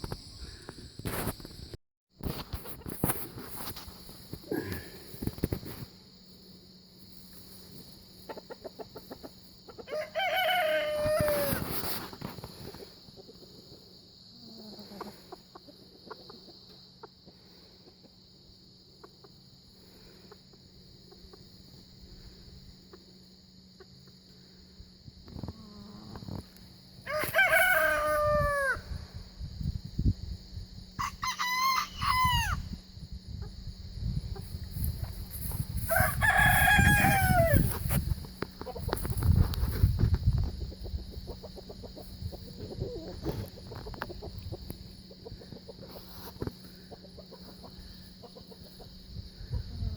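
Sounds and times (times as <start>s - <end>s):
rooster crowing: 9.9s - 11.6s, 27.0s - 28.9s, 31.0s - 32.7s, 35.9s - 37.7s.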